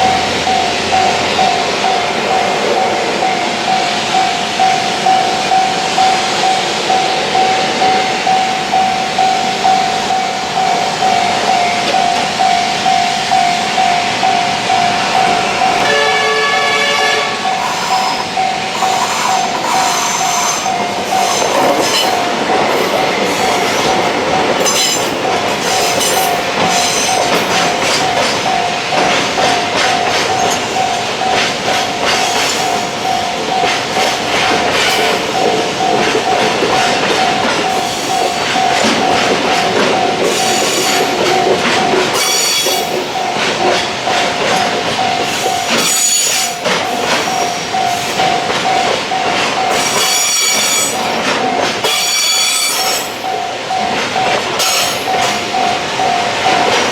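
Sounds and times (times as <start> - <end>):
railroad crossing alarm ringing: 0.0 - 56.9
train wheels clattering: 0.0 - 56.9
high-pitched wheel squeals: 17.4 - 22.2, 42.2 - 42.9, 45.3 - 46.7, 49.7 - 51.2, 51.8 - 53.2.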